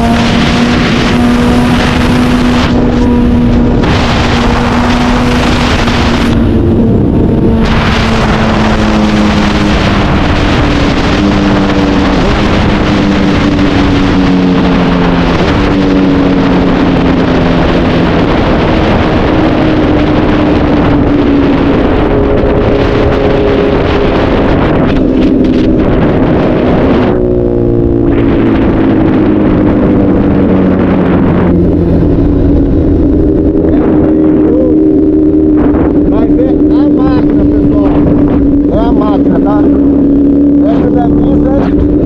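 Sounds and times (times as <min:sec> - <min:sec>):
motorcycle engine running: 0:00.0 - 0:42.0
wind rushing over microphone: 0:00.0 - 0:42.0.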